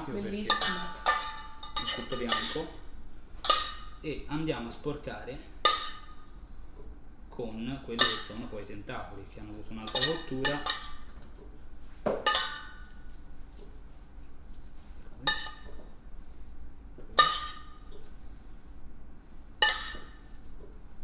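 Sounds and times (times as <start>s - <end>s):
utensil clinking on a plate: 0.4s - 2.8s, 3.5s - 4.0s, 8.0s - 8.5s, 9.8s - 11.1s, 12.2s - 13.7s, 15.0s - 15.8s, 17.2s - 18.0s, 19.6s - 20.8s.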